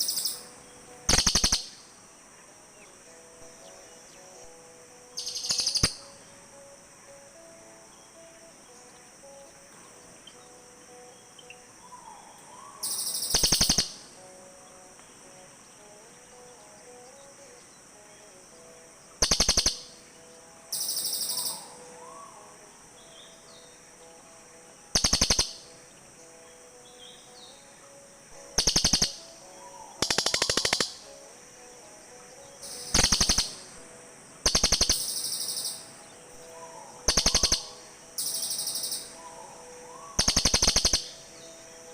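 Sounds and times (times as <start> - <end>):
bird rattling trills: 1.1 - 1.8, 5.2 - 6.0, 12.8 - 14.0, 19.2 - 19.9, 24.9 - 25.6, 28.6 - 29.3, 29.9 - 31.0, 32.6 - 33.7, 34.4 - 35.8, 37.0 - 39.1, 40.2 - 41.1
higher thin bird call: 11.5 - 14.2, 20.8 - 22.6.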